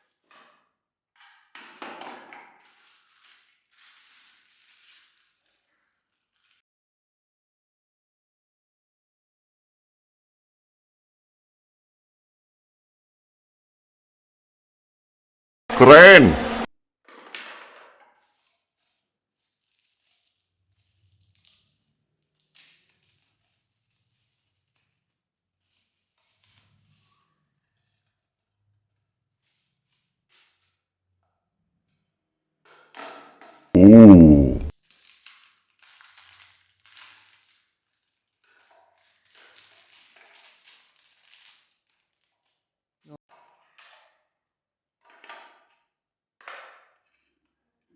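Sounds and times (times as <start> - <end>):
faint rustling and handling: 2.6 - 6.6, 18.2 - 28.2.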